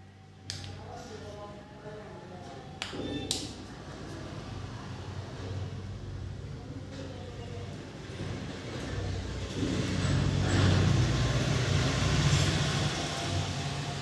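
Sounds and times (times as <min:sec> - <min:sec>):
vehicle engine passing: 0:07.9 - 0:14.0.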